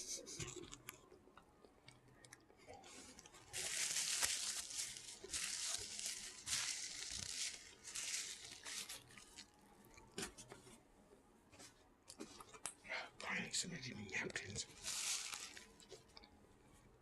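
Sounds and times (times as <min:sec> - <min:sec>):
paper packaging crinkling and tearing: 0:03.0 - 0:09.6, 0:14.7 - 0:16.0.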